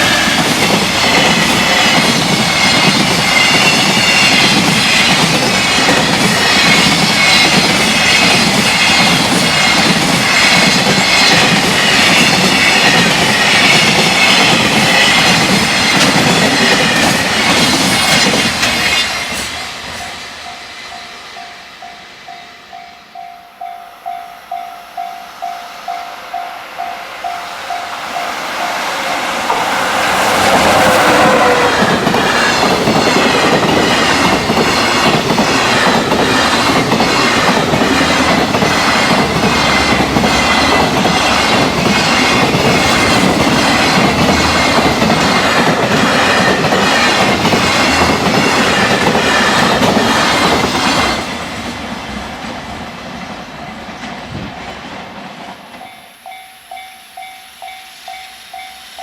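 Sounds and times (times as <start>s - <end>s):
freight train passing: 0.0s - 59.0s
level crossing warning bell: 18.8s - 43.2s, 55.7s - 59.0s
wheels clacking over rail joints: 27.6s - 51.4s.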